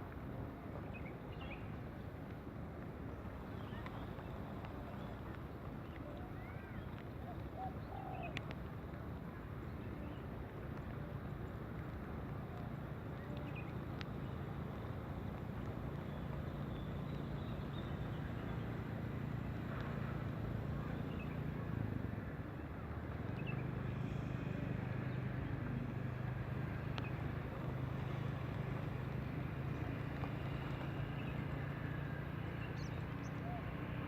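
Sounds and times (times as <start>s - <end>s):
engine humming: 8.4s - 34.0s.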